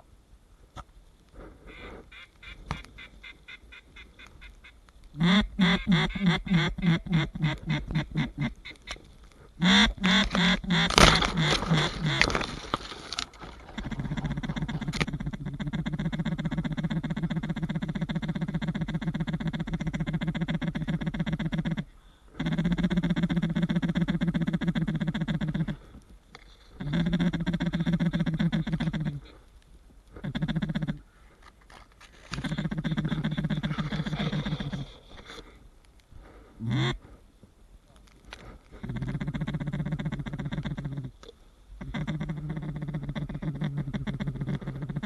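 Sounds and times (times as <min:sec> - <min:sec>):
duck call quacks: 0:01.7 - 0:09.0, 0:09.6 - 0:12.3, 0:36.6 - 0:37.0.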